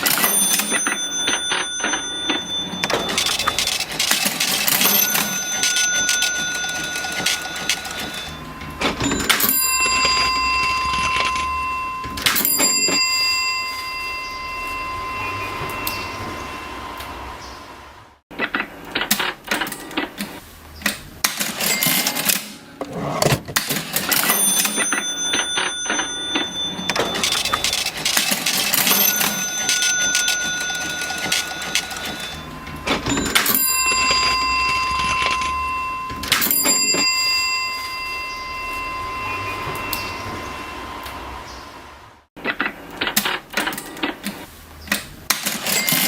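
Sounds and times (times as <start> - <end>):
cash register key clacks: 0.0 - 13.5, 21.2 - 37.6, 45.3 - 46.0
cash register bell ringing: 0.0 - 17.6, 21.2 - 41.9, 45.3 - 46.0.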